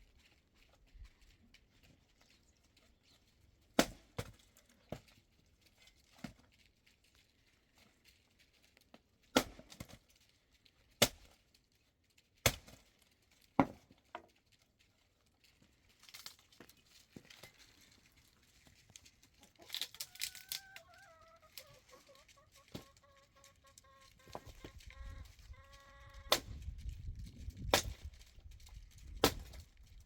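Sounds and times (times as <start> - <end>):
animal call falling in pitch: 19.8 - 21.5.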